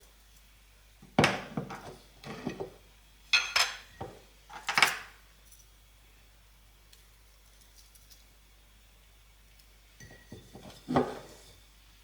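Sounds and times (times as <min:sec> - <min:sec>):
dishes and utensils clattering: 0:01.2 - 0:02.8, 0:03.4 - 0:05.1, 0:10.0 - 0:11.5.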